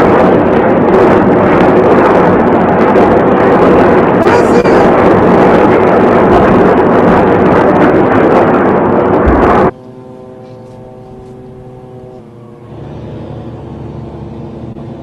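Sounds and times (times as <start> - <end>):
steady rushing roar: 0.0 - 15.0
ominous music chords: 9.4 - 15.0.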